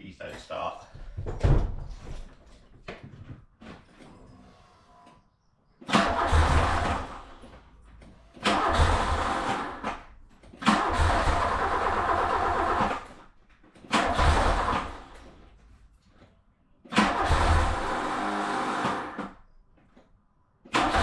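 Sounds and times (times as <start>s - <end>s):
car engine cranking on starter: 5.8s - 7.5s, 8.4s - 13.2s, 13.9s - 15.2s, 16.9s - 19.4s, 20.7s - 21.0s.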